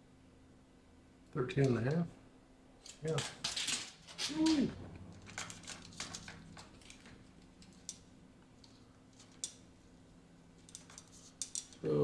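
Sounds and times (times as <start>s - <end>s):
steady low hum: 0.0s - 12.0s
faint clicks and taps: 4.2s - 9.7s.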